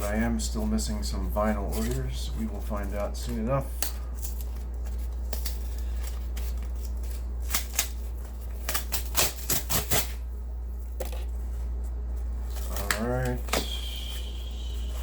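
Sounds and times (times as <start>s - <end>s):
package tearing: 3.8s - 10.2s.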